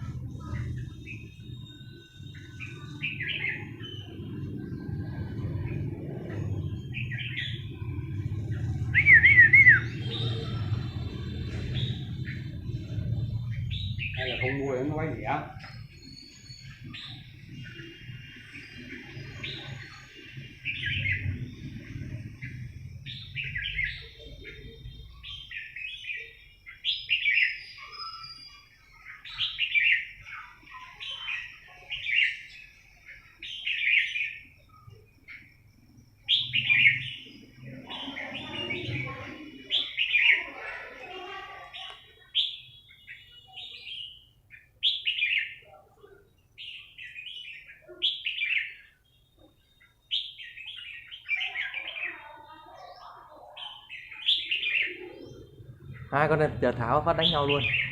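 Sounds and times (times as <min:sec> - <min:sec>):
songbirds calling: 0:00.0 - 0:57.9.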